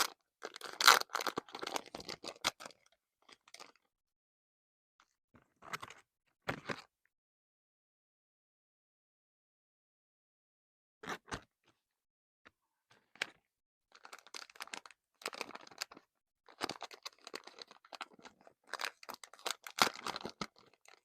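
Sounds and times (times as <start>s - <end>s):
packaging crinkling and tearing: 0.0s - 2.8s, 14.0s - 21.0s.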